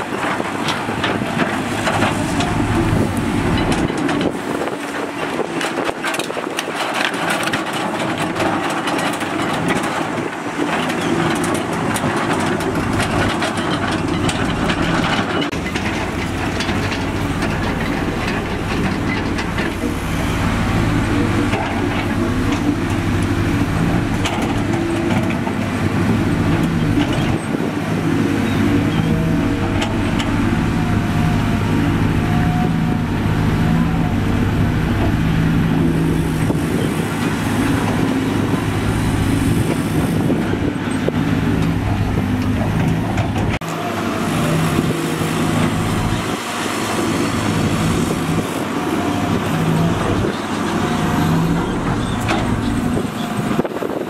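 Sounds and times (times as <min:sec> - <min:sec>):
diesel machinery engines running: 0:00.0 - 0:54.0
clatter and knocks: 0:05.6 - 0:19.8.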